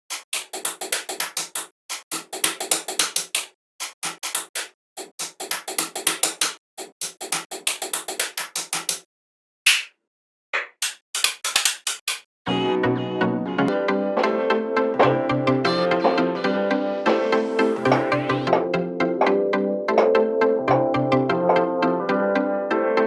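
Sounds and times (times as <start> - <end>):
fast sharp knocks: 0.1 - 9.0
music: 12.4 - 23.0.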